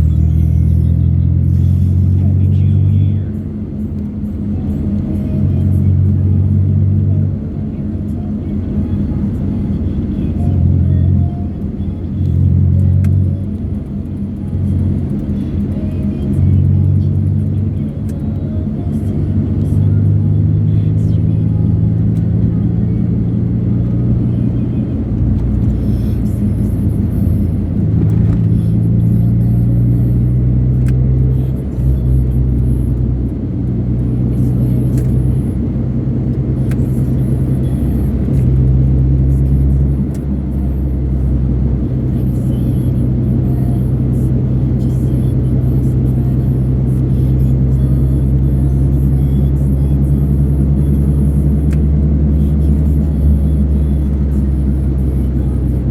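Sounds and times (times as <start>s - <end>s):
car rumbling on road: 0.0s - 55.9s
car stereo music with heavy bass: 34.4s - 55.9s.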